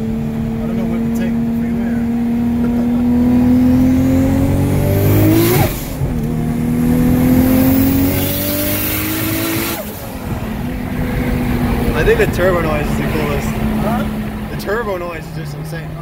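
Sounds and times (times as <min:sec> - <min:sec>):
car engine revving under full throttle: 0:00.0 - 0:16.0.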